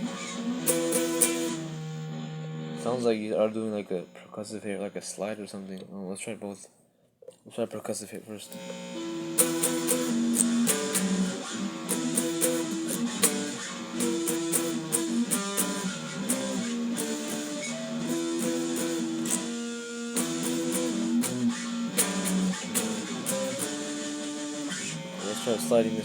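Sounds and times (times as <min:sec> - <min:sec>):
electric guitar power chords: 0:00.0 - 0:04.2, 0:08.5 - 0:26.0
percussive pick hits: 0:00.4 - 0:01.6, 0:09.4 - 0:25.6.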